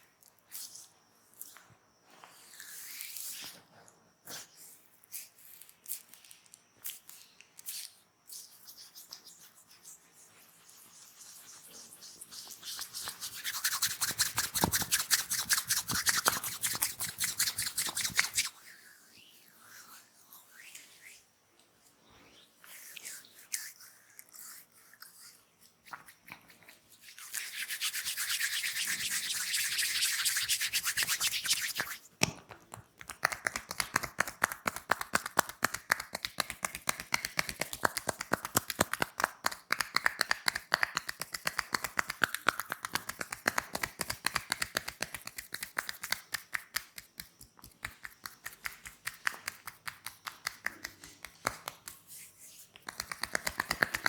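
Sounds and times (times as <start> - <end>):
hands rubbing skin: 7.6 - 21.2, 22.6 - 54.0
rhythmic tapping slaps on skin: 12.3 - 18.5, 28.0 - 52.1, 52.7 - 54.0.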